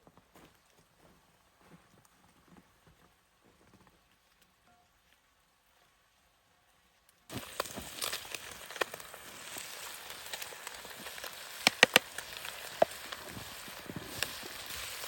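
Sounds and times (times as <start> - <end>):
food sizzling in a pan: 7.3 - 15.0
sharp clicks: 11.6 - 12.2.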